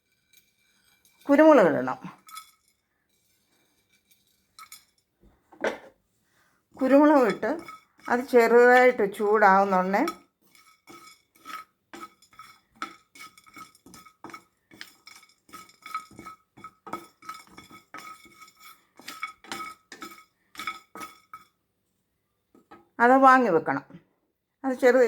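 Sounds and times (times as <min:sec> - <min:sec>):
spoon clinking in metal pan: 0:00.0 - 0:05.1, 0:06.8 - 0:21.6.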